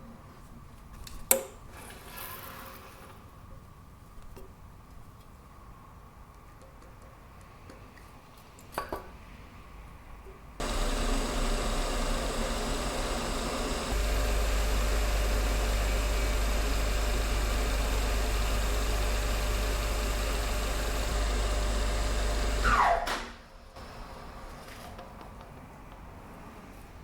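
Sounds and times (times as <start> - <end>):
electric motor humming: 10.6 - 23.0.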